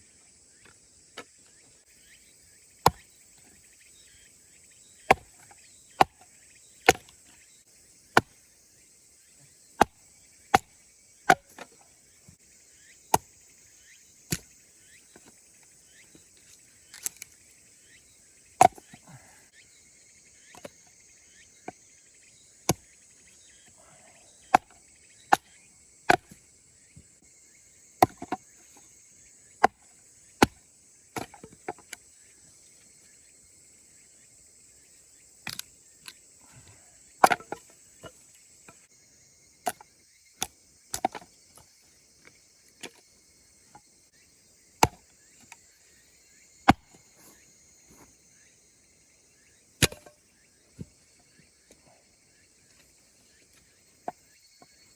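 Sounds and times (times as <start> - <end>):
insects chirring: 0.0 - 54.9
firewood being split: 5.1 - 6.2, 6.9 - 7.2, 37.2 - 37.7, 40.4 - 41.3, 44.8 - 45.6, 49.8 - 50.2.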